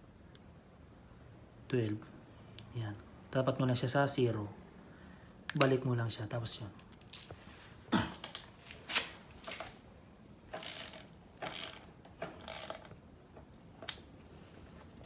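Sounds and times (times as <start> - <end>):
torque wrench ratchet clicking: 6.9 - 7.4, 10.5 - 13.0.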